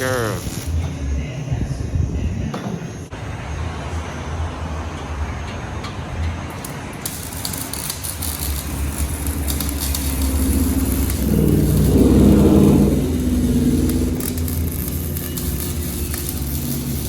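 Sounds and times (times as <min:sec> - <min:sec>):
car engine rumbling: 0:08.2 - 0:17.0
engine note accelerating: 0:08.5 - 0:17.0.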